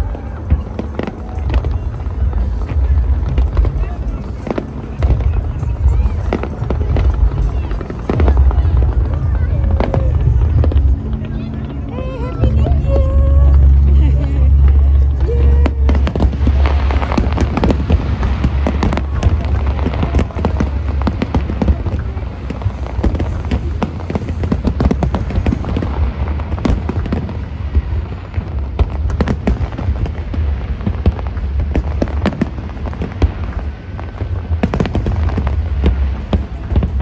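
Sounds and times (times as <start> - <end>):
fireworks bursting and crackling: 0.0 - 37.0
music playing: 0.0 - 37.0.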